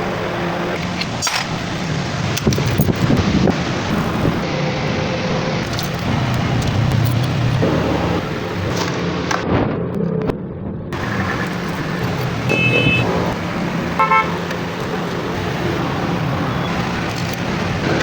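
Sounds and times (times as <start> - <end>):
motorcycle engine running: 0.0 - 9.4, 11.0 - 18.0
vehicle horn toots: 12.4 - 14.5.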